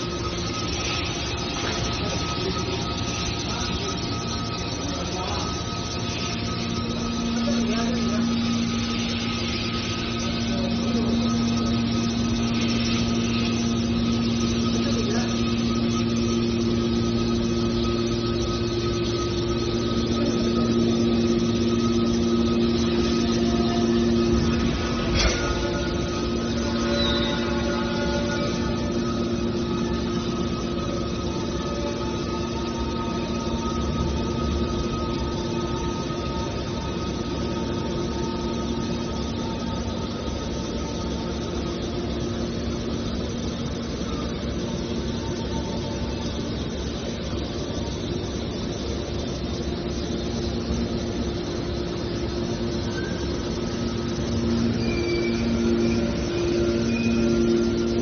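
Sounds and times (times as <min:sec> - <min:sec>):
can baler machine hum: 0:00.0 - 0:58.0.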